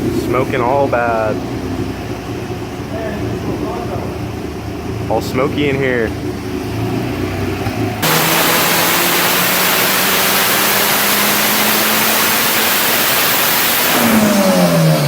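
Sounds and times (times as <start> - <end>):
turbocharged car engine revving: 0.0 - 15.0
loud rushing roar: 8.0 - 15.0.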